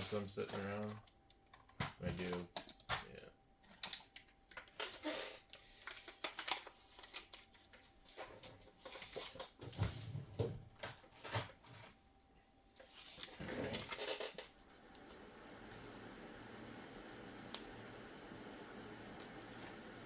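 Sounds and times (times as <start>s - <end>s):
small parts and tools clicking: 3.7s - 9.5s.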